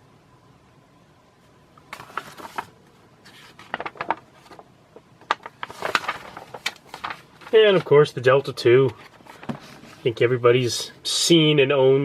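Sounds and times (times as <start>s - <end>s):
paper pages rustling: 1.9s - 10.3s.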